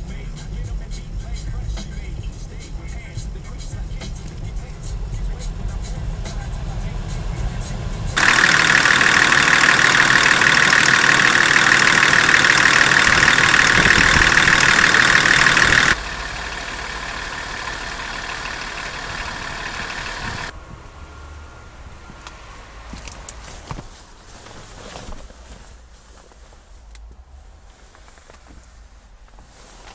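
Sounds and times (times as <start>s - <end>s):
turbodiesel engine running: 0.0s - 23.9s
high turbo hiss: 0.3s - 20.5s.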